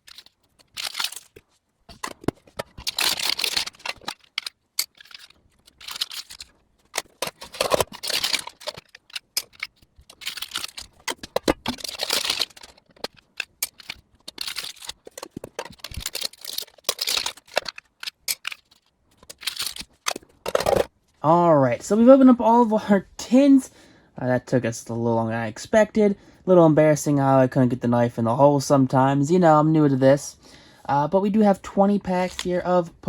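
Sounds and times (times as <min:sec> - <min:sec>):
shrink-wrap crinkling and tearing: 0:00.0 - 0:20.9.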